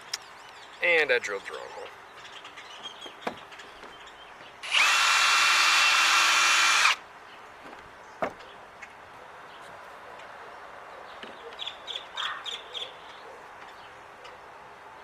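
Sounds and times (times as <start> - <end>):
power drill whine: 4.6 - 7.0.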